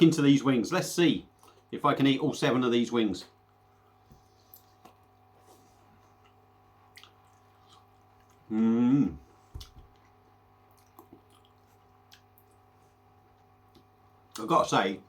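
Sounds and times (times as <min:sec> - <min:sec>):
man chewing chicken wings: 0:03.8 - 0:08.6, 0:09.3 - 0:13.9
short voiced sound from man: 0:08.5 - 0:09.2.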